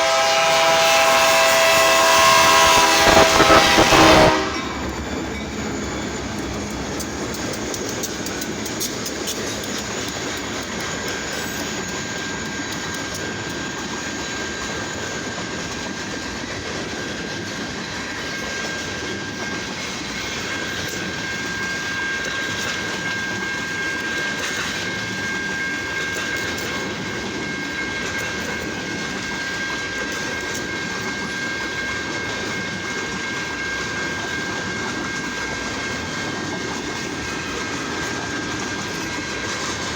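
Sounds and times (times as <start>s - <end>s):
railroad cars rolling past: 0.0s - 39.9s
high-pitched tone: 2.2s - 8.0s
wheels clicking over rail joints: 4.6s - 39.9s.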